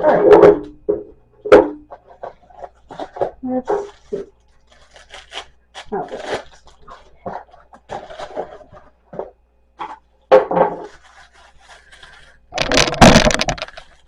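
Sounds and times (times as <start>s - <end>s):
packaging rustling: 2.1s - 9.2s, 10.8s - 14.0s
parts knocking: 12.6s - 13.9s.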